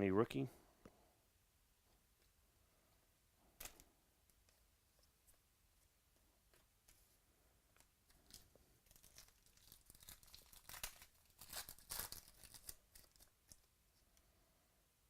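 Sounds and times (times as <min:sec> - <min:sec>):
card pack wrapper tearing and crinkling: 0:08.1 - 0:13.7.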